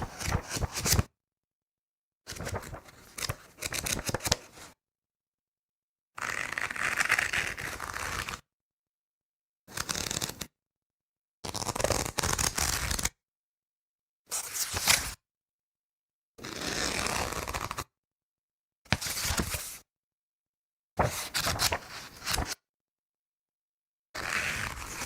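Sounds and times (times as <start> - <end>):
paper pages turning: 0.0 - 1.0, 2.4 - 4.4, 21.0 - 22.6.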